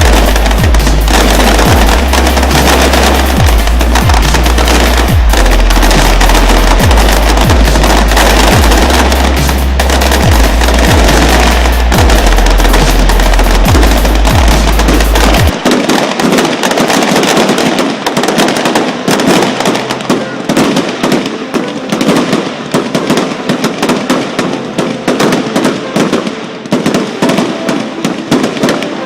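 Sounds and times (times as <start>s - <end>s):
heavy low rumble: 0.0s - 15.6s
fireworks crackling: 0.0s - 29.0s.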